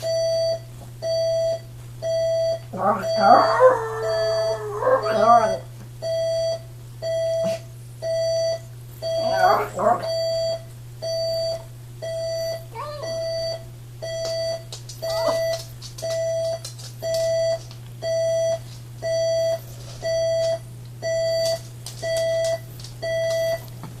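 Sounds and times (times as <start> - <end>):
alarm clock beeping: 0.0 - 7.4, 8.0 - 23.7
dog howling: 2.7 - 5.7, 9.2 - 10.1.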